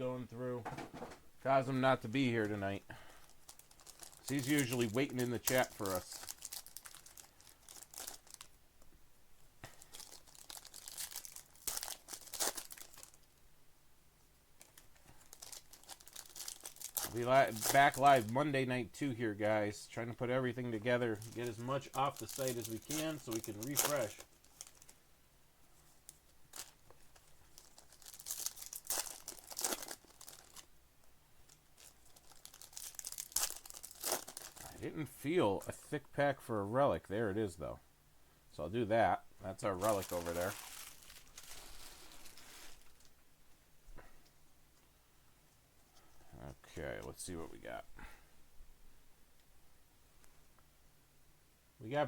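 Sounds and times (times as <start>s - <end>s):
card pack wrappers crinkling: 3.1s - 8.6s, 9.6s - 13.3s, 14.6s - 18.6s, 20.5s - 25.0s, 26.1s - 30.7s, 31.4s - 34.8s, 39.6s - 43.2s
cards being handled: 21.2s - 25.0s.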